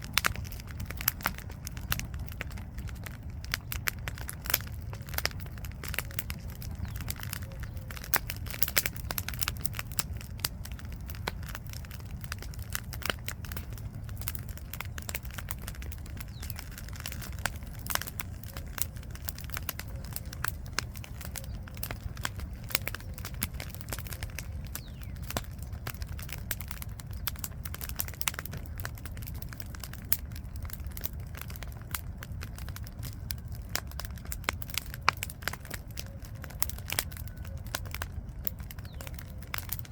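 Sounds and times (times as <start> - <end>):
campfire crackling and popping: 0.0 - 39.9.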